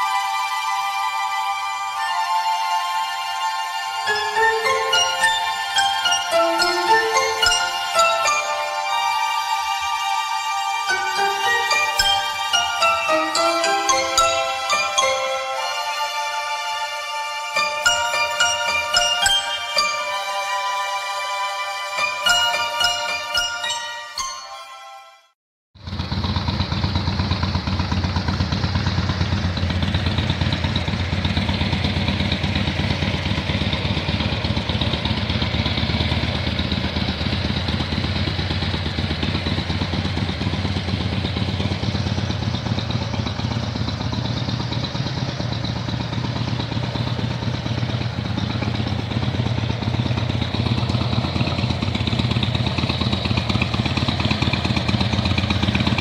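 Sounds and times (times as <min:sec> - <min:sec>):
motorcycle engine idling: 0:25.8 - 0:56.0.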